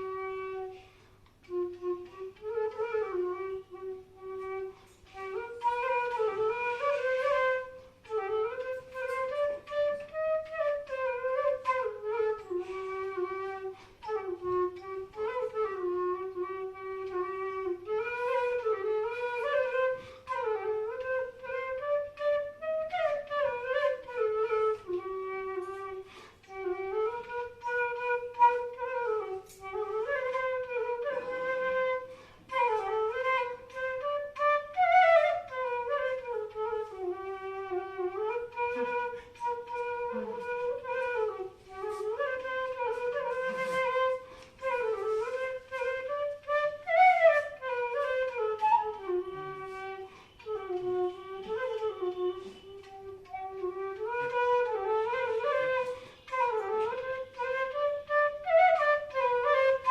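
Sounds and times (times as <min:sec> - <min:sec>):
bamboo flute melody: 0:00.0 - 0:59.9.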